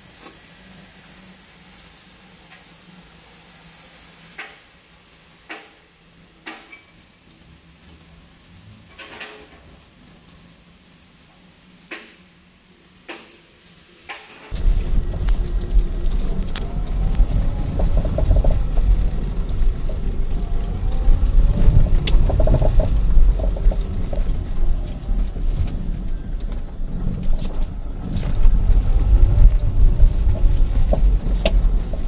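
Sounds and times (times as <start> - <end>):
car driving rumble: 14.5 - 32.0
suspension knocks: 14.5 - 32.0.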